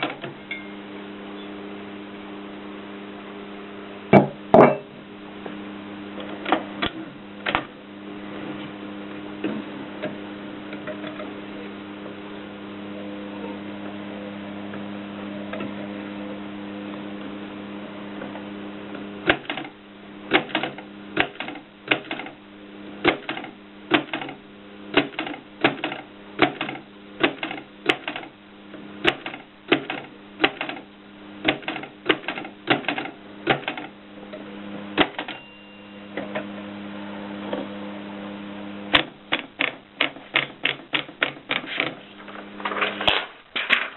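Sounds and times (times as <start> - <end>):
steady hum: 0.0 - 43.9
typewriter clacks: 19.3 - 19.7, 20.3 - 22.3, 23.1 - 24.4, 25.0 - 28.3, 29.1 - 30.8, 31.5 - 33.9, 39.0 - 42.0.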